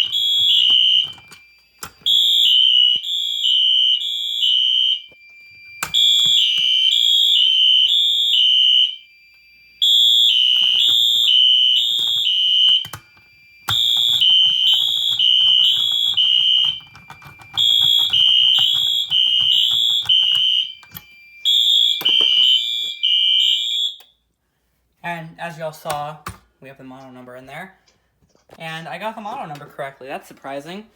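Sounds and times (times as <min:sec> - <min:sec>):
electronic alarm horn blasts: 0:00.0 - 0:24.0.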